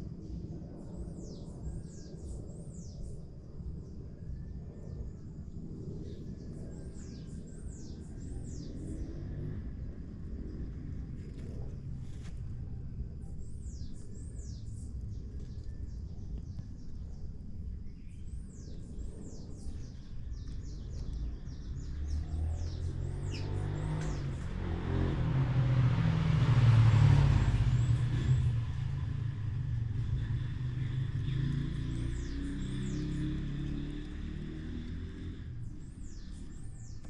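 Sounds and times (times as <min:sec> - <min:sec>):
steady low rumble: 0:00.0 - 0:23.2
birds chirping: 0:13.2 - 0:25.2, 0:27.6 - 0:37.0
vehicle passing: 0:20.4 - 0:37.0.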